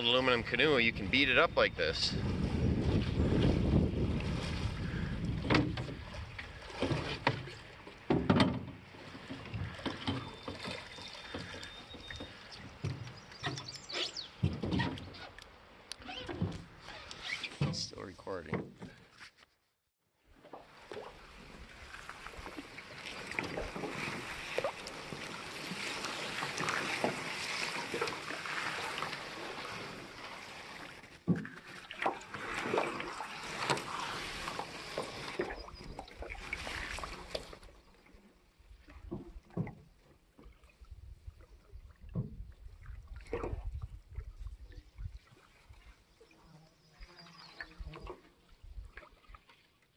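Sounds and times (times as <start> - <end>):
canoe knocking on rocks: 8.1 - 10.7.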